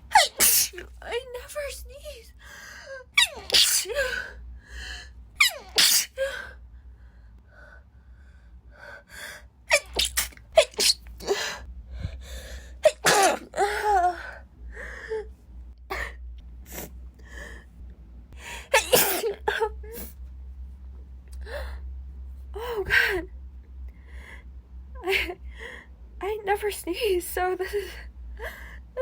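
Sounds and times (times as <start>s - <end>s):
woman sneezing: 0.1s - 0.9s, 3.2s - 4.3s, 5.4s - 6.2s, 9.7s - 11.6s, 12.8s - 13.5s, 18.7s - 20.1s.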